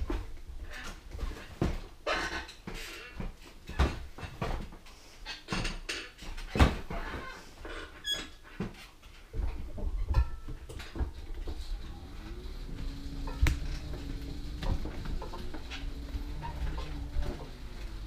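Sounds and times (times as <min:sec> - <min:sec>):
scooter rumble and rattling: 0:08.7 - 0:18.0
motor whine: 0:11.4 - 0:18.0.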